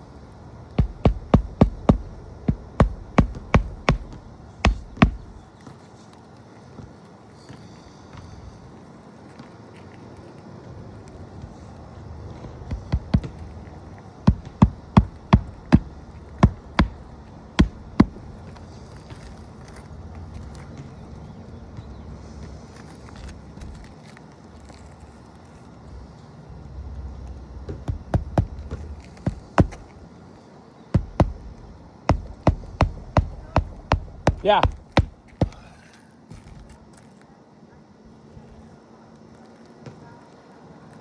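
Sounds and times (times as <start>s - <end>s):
hammer striking nails: 0.8s - 5.4s, 12.8s - 13.5s, 14.3s - 18.6s, 27.9s - 29.9s, 31.0s - 35.8s.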